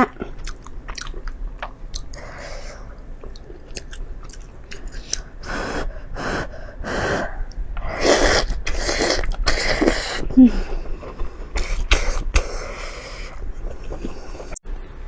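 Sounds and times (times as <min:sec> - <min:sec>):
wet chewing and slurping: 0:00.3 - 0:05.9, 0:07.8 - 0:14.6
breaths: 0:02.1 - 0:03.0, 0:05.2 - 0:08.0, 0:08.7 - 0:14.6.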